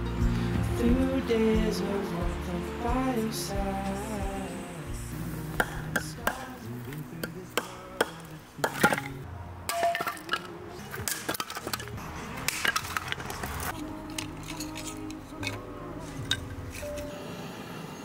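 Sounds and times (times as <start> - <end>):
soft background music: 0.0 - 8.8, 13.6 - 18.0
objects knocking and clinking: 8.6 - 15.6.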